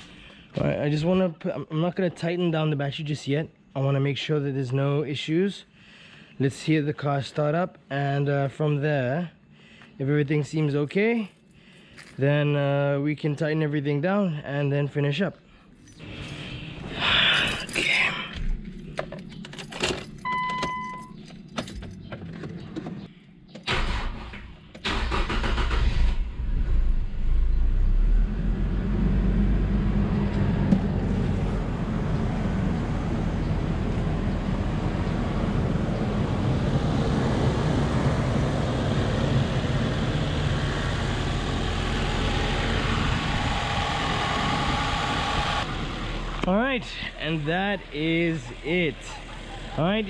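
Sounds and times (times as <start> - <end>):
car engine cranking and idling: 15.9 - 23.1, 23.7 - 50.0
short electronic beep: 20.2 - 21.2.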